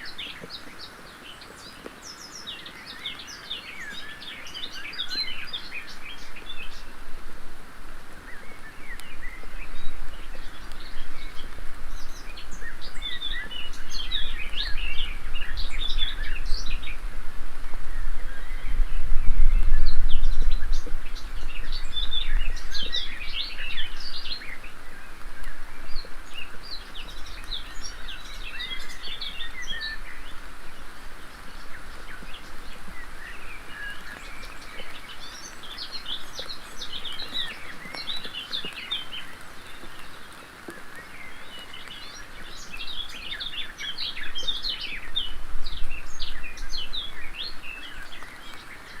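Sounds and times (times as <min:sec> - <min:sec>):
background hiss: 0:00.0 - 0:49.0
songbird chirping: 0:00.0 - 0:49.0.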